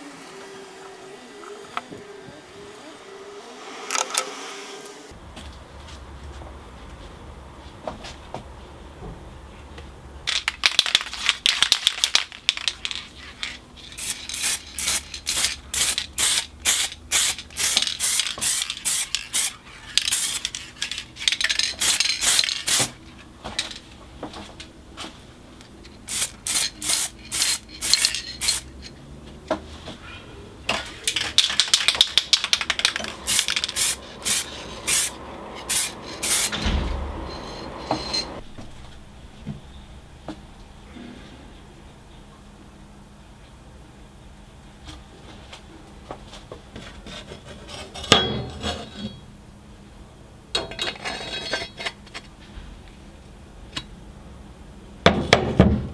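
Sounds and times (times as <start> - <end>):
tool scraping strokes: 32.5 - 36.6.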